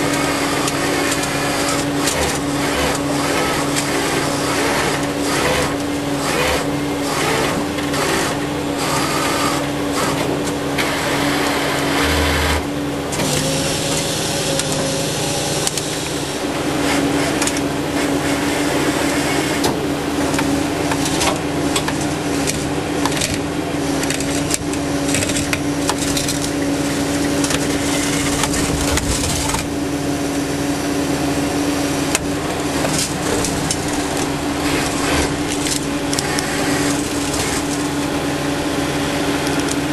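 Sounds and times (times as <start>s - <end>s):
truck engine running: 0.0s - 39.9s
scraping and creaking: 24.0s - 30.5s, 32.0s - 38.3s.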